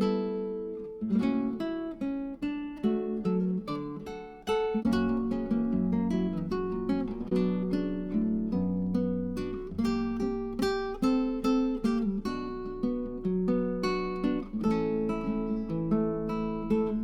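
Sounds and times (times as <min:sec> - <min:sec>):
acoustic guitar music: 0:00.0 - 0:17.0.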